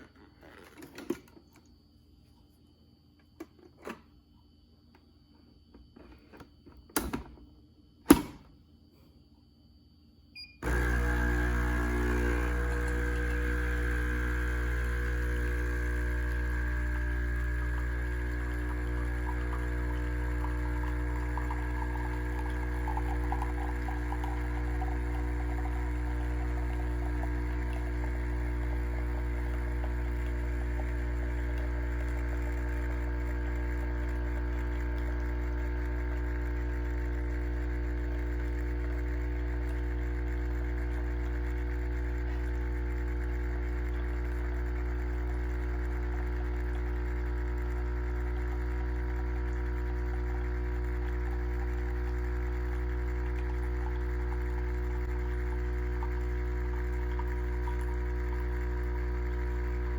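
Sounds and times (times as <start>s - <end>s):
coffee machine pump humming: 10.4s - 59.9s.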